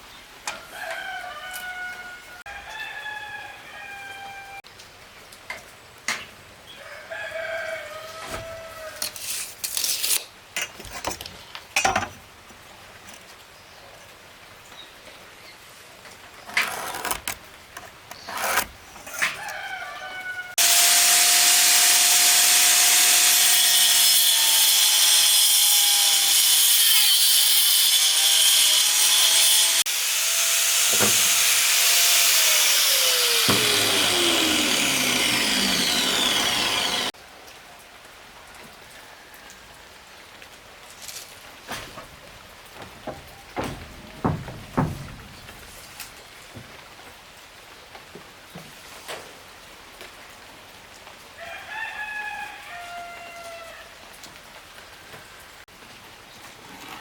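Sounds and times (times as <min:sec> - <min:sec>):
rooster crowing: 0:00.5 - 0:04.6, 0:06.8 - 0:09.1, 0:19.2 - 0:20.6, 0:51.4 - 0:54.0
power saw cutting wood: 0:16.4 - 0:19.4, 0:20.5 - 0:37.2
knocks: 0:30.9 - 0:31.4, 0:42.8 - 0:46.0.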